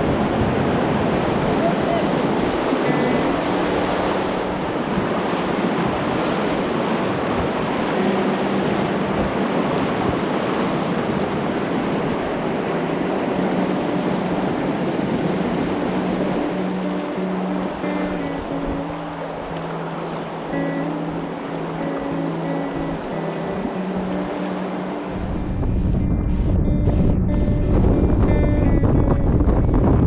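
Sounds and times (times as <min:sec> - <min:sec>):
river water rushing: 0:00.0 - 0:25.9.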